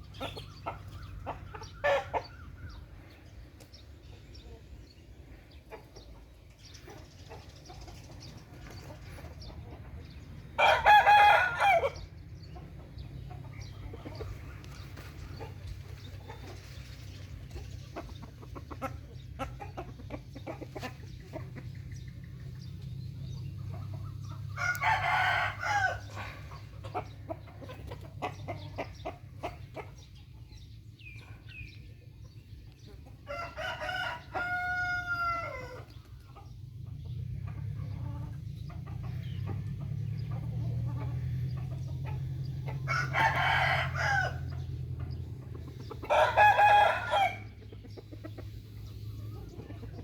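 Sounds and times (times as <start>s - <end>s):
rooster crowing: 10.6s - 12.0s, 24.6s - 26.4s, 33.3s - 35.8s, 42.8s - 44.6s, 46.1s - 47.5s.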